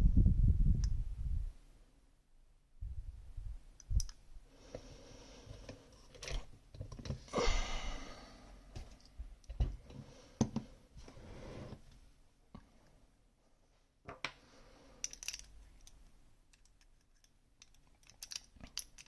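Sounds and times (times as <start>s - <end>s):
metal lock parts clicking: 15.0s - 19.0s.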